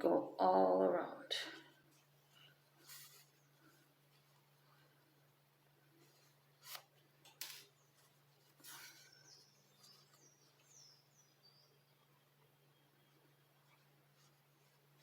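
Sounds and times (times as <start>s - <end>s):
steady low hum: 0.0s - 15.0s
yarn rustling: 1.7s - 10.6s
faint high bird chirps: 8.7s - 13.9s.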